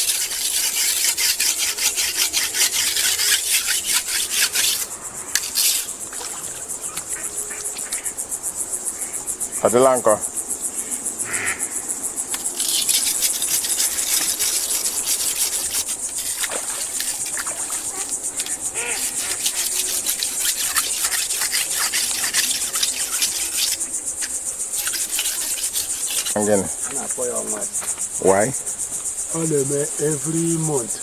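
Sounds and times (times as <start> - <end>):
scratchy rustling: 0.0 - 7.4, 12.4 - 28.1
insects trilling: 0.0 - 31.0.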